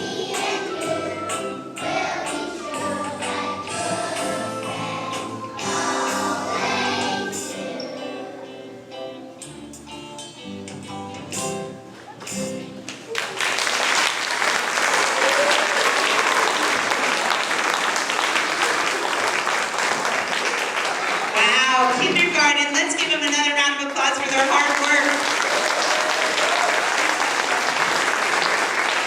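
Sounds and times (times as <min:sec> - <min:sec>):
song with held notes: 0:00.0 - 0:12.8
audience clapping: 0:12.9 - 0:21.8, 0:22.7 - 0:29.0.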